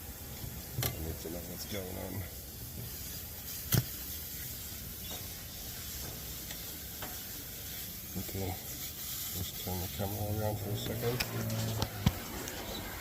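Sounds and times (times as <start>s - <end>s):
steady background hiss: 0.0s - 13.0s.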